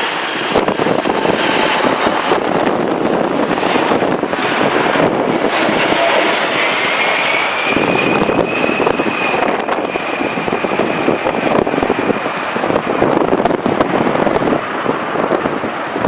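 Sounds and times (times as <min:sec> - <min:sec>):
jet engine whine: 0:00.0 - 0:16.0
wind buffeting microphone: 0:00.0 - 0:16.0.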